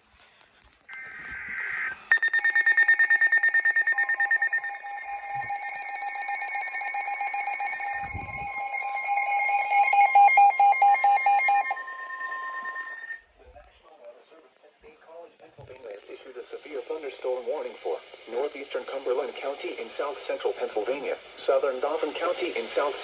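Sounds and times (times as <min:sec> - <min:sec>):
screechy digital data noise: 0:00.9 - 0:13.2
electronic alert tone pulsing: 0:01.4 - 0:13.2.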